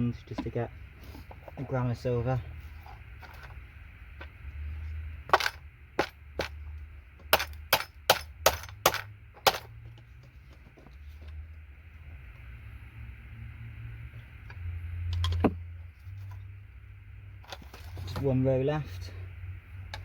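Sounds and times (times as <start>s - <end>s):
sharp snaps of circuit board parts: 7.2s - 9.7s.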